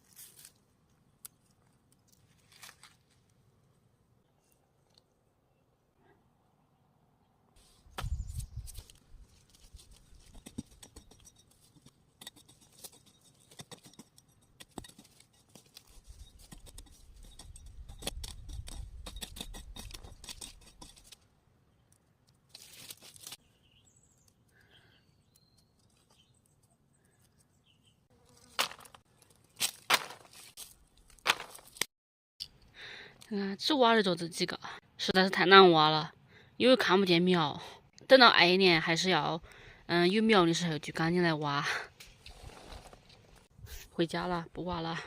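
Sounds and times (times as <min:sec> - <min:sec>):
digging scrapes in soil: 0:07.6 - 0:21.3, 0:22.5 - 0:23.5, 0:42.0 - 0:44.0
rustling: 0:22.5 - 0:23.4.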